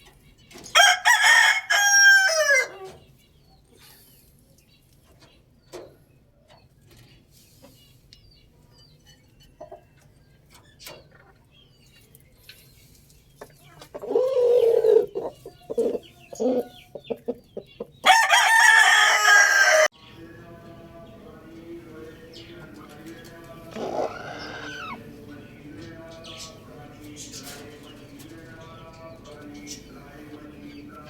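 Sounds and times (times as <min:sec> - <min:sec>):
rooster crowing: 0:00.7 - 0:02.9, 0:18.0 - 0:19.9, 0:23.8 - 0:25.1
faint chirps and clicks: 0:08.1 - 0:11.3
rooster clucking: 0:13.8 - 0:31.0.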